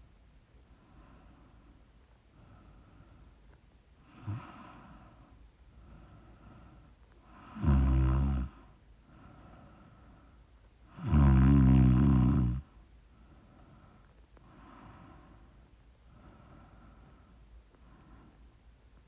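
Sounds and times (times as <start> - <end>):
soft breathing: 0.6 - 7.6, 8.6 - 10.6, 13.1 - 19.0
woman snoring: 7.4 - 8.6, 11.0 - 12.7.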